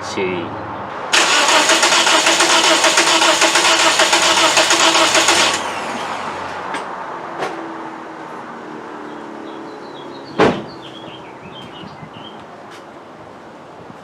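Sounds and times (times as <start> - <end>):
starter motor cranking engine: 1.1 - 6.4.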